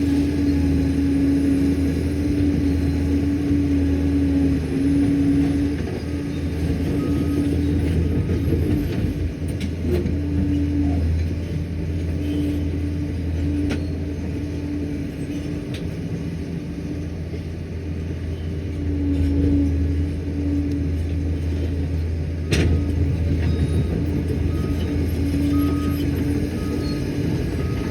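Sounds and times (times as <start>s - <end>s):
diesel engine droning under load: 0.0s - 27.9s.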